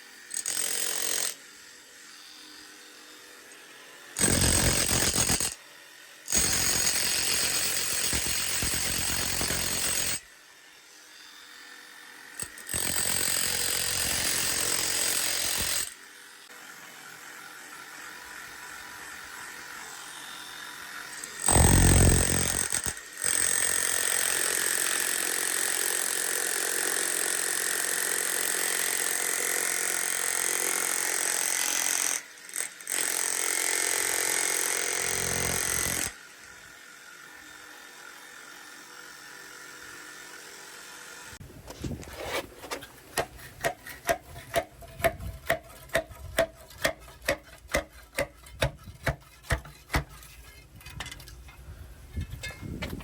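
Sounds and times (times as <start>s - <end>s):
handheld power tool whining: 0.0s - 5.6s, 6.2s - 10.4s, 11.1s - 16.1s, 18.0s - 36.8s.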